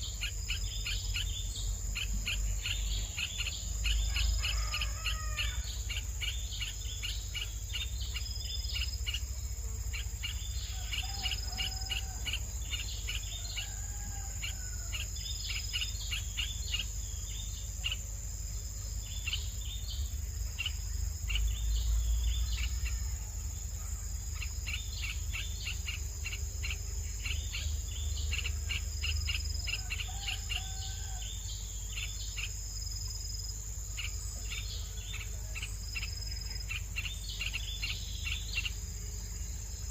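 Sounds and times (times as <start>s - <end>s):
short bird calls: 0.0s - 9.2s
insects buzzing: 0.0s - 39.9s.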